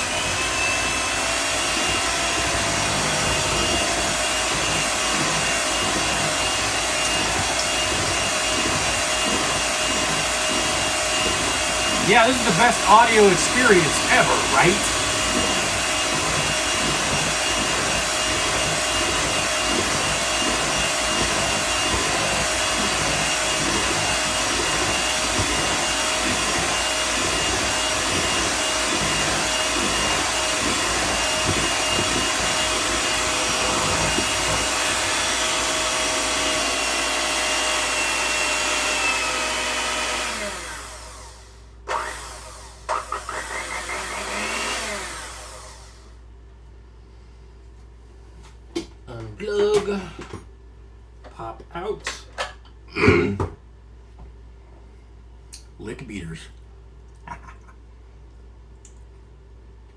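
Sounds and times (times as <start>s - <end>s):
electric stand mixer running: 0.0s - 46.0s.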